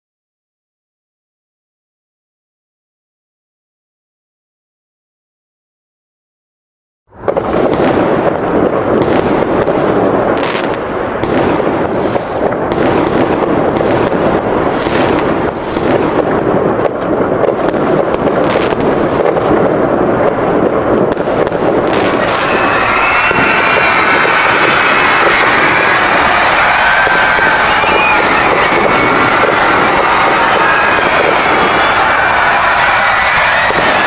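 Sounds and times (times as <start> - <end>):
fireworks bangs and crackles: 7.1 - 34.0.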